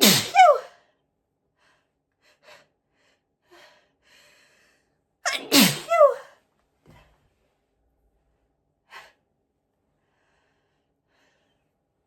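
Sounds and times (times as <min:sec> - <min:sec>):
person sneezing loudly: 0:00.0 - 0:00.7, 0:05.3 - 0:06.3.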